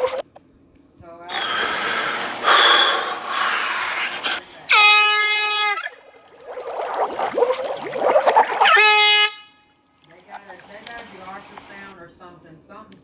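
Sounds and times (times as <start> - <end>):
loud rushing hissing noise: 1.3 - 4.7
air horn blast: 1.3 - 5.9, 8.6 - 9.6.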